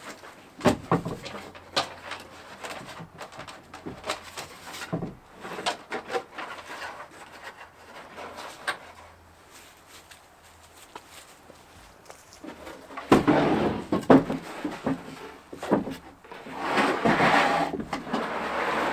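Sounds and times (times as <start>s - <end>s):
parts clicking knocking and rubbing: 0.0s - 9.2s.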